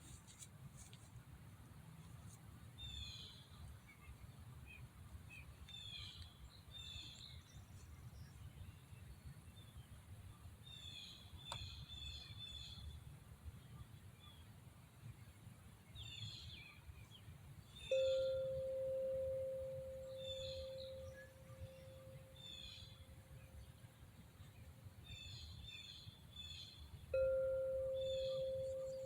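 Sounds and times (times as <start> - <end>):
small birds chirping: 15.9 - 29.0.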